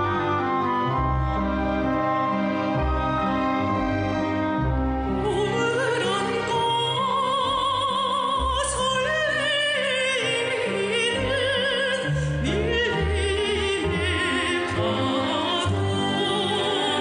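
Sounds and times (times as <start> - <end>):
orchestral accompaniment: 0.0 - 8.3
person singing with vibrato: 5.2 - 17.0.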